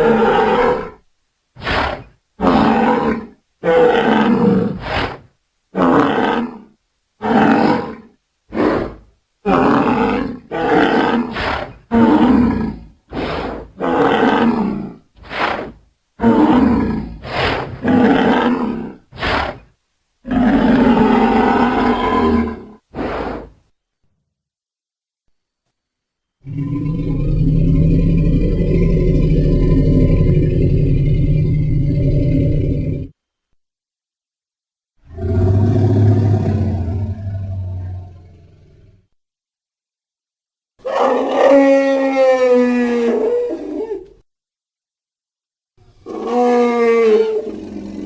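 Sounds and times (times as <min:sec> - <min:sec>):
dinosaur roars and bellows: 0:00.0 - 0:01.0, 0:01.6 - 0:05.1, 0:05.8 - 0:19.6, 0:20.2 - 0:23.5, 0:26.4 - 0:33.2, 0:35.0 - 0:39.2, 0:40.8 - 0:44.2, 0:46.0 - 0:48.0.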